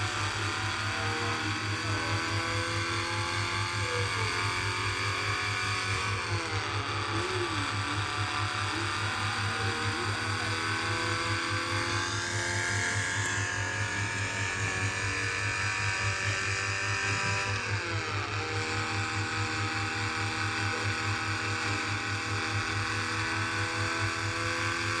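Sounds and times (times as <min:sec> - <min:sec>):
engine pulsing low drone: 0:00.0 - 0:25.0.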